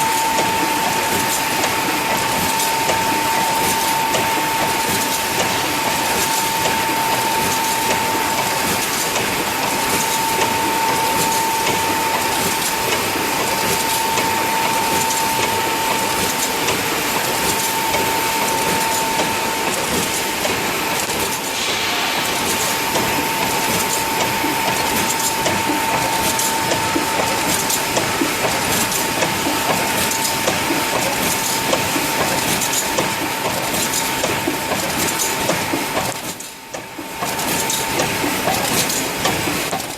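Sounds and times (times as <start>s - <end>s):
high constant whine: 0.0s - 28.5s
welding machine running: 0.0s - 39.9s.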